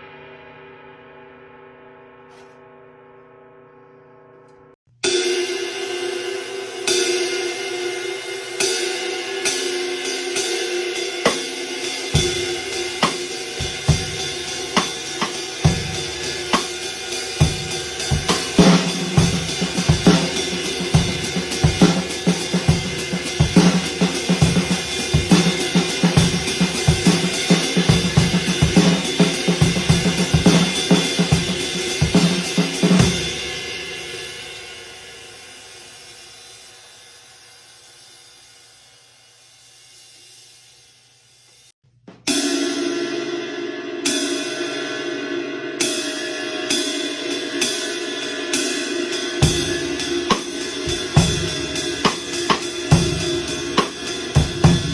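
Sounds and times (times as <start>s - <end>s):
ride cymbal ringing: 11.3s - 31.9s
bass drum and snare groove: 11.3s - 33.6s, 49.4s - 54.9s.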